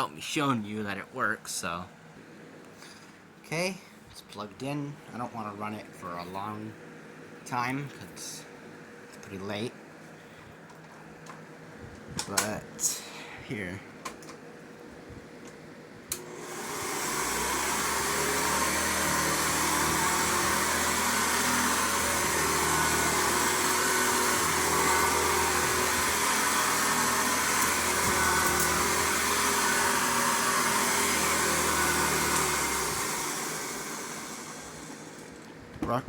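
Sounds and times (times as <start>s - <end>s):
vacuum cleaner motor running: 16.1s - 35.5s.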